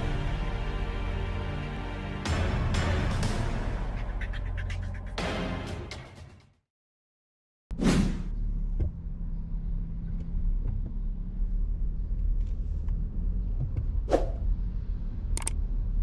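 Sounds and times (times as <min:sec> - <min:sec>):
vehicle rumble: 0:08.2 - 0:16.0.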